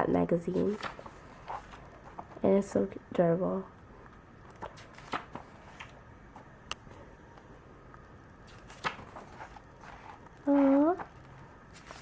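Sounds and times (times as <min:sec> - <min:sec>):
magazine pages rustling: 0:00.5 - 0:02.5, 0:04.6 - 0:06.0, 0:08.4 - 0:12.0
sharp paper clicks: 0:08.5 - 0:09.6.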